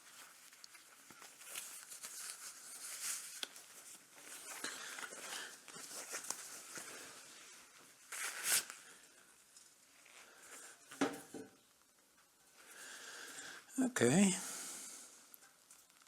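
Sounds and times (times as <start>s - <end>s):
rustling and scraping: 0.0s - 11.8s.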